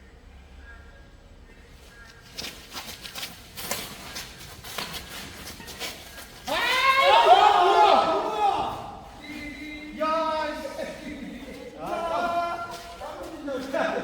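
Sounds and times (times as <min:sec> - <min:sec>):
shoe steps on court floor: 0:02.2 - 0:14.0
man shouting: 0:06.5 - 0:14.0.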